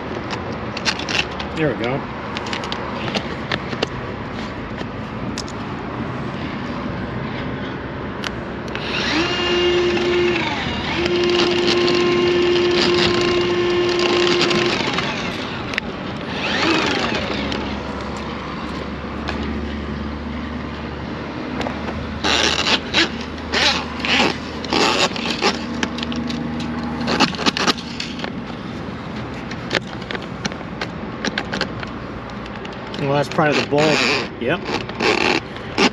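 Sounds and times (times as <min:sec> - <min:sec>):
sharp clicks and knocks: 0:02.3 - 0:04.0, 0:21.6 - 0:28.5, 0:29.2 - 0:33.2
drain snake motor whine: 0:08.7 - 0:18.4.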